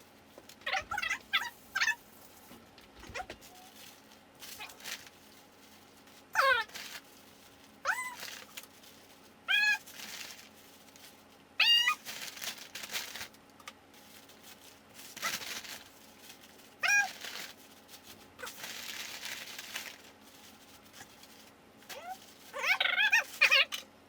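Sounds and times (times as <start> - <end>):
soft rustling: 0.0 - 23.5
dog whining: 0.6 - 2.0, 6.4 - 6.8, 7.8 - 8.5, 9.5 - 9.9, 11.6 - 12.0, 16.8 - 17.3, 21.9 - 23.8.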